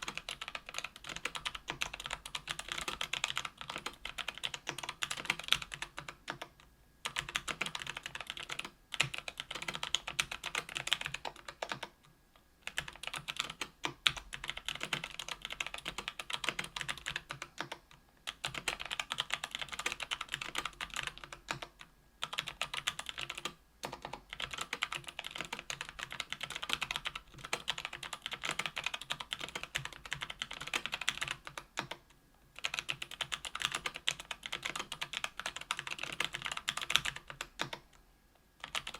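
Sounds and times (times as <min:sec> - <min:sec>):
fast keyboard typing: 0:00.0 - 0:37.9, 0:38.6 - 0:38.9.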